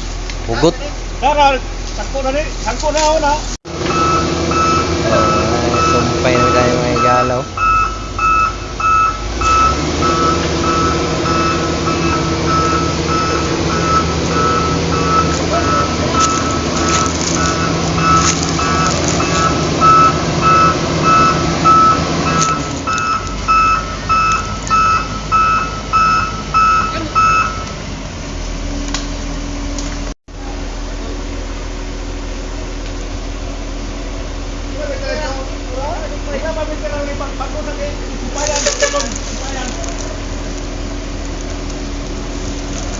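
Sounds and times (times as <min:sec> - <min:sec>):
construction vehicle engine running: 0:00.0 - 0:42.9
reversing alarm beeping: 0:03.7 - 0:27.8.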